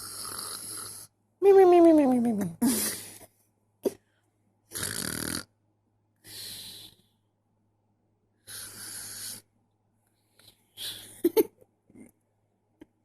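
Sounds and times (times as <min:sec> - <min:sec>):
baby snoring: 0:00.0 - 0:01.1, 0:04.7 - 0:05.5, 0:08.5 - 0:09.5.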